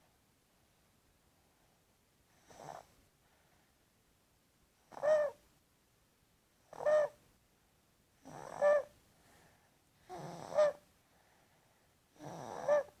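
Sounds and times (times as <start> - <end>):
toddler snoring: 2.4 - 3.0, 8.2 - 8.9, 10.0 - 10.8, 12.1 - 13.0.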